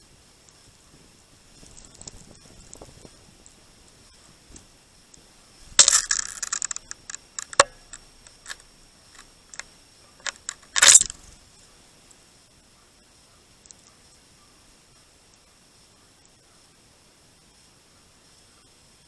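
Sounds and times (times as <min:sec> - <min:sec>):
birds rustling and clattering: 0:00.9 - 0:11.6
sharp clicks and clinks: 0:05.7 - 0:08.6, 0:09.2 - 0:11.2.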